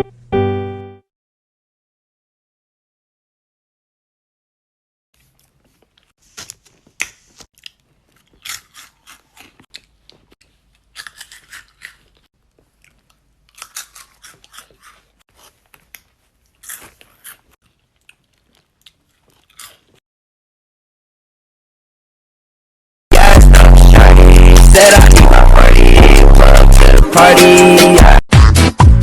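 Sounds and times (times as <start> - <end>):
person chewing crunchy food: 5.2 - 20.0.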